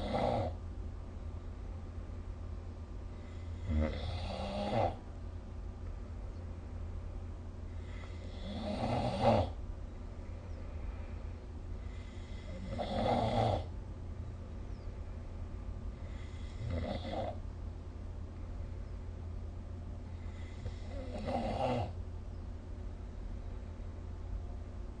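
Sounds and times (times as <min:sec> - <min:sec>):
person snoring: 0:00.0 - 0:00.6, 0:03.2 - 0:05.0, 0:07.8 - 0:09.6, 0:11.8 - 0:13.7, 0:16.0 - 0:17.4, 0:20.2 - 0:22.0.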